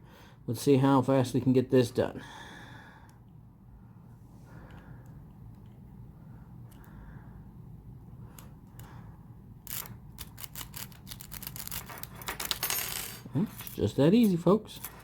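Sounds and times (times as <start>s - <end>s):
lock pins clicking: 9.6s - 15.0s.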